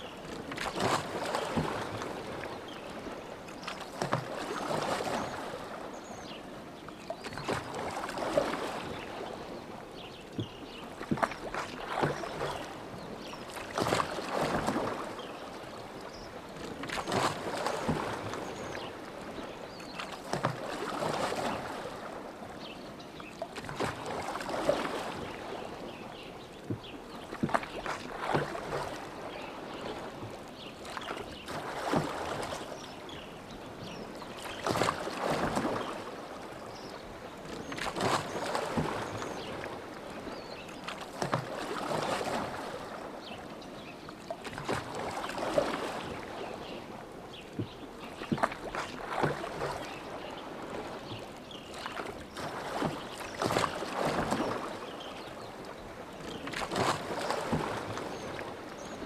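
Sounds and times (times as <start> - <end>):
oars splashing in water: 0.0 - 59.0.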